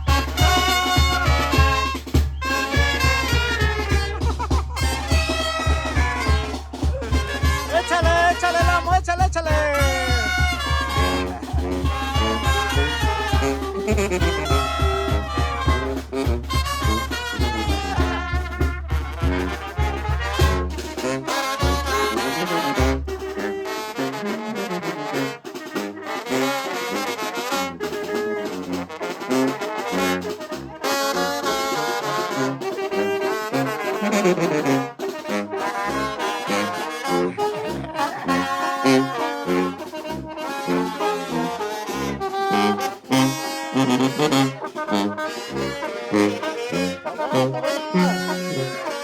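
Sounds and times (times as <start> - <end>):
regular bass beat: 0.0 - 23.6, 34.6 - 49.0
brass band playing dance tune: 0.0 - 49.0.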